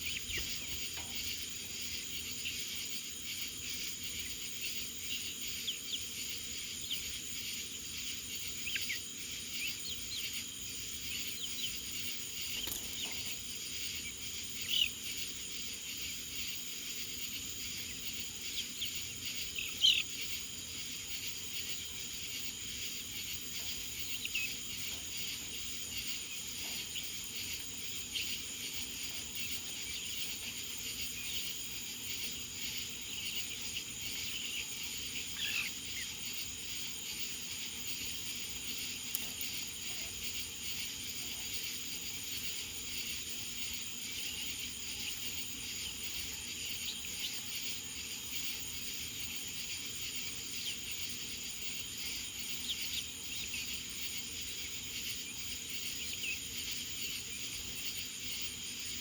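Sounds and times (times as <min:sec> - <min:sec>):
crickets and insects trilling: 0:00.0 - 0:59.0.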